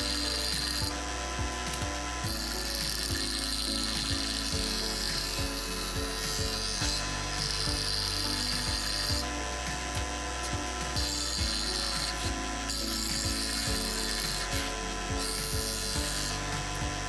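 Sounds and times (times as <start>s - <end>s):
background music with steady beat: 0.0s - 17.0s
scroll saw cutting wood: 0.0s - 17.0s.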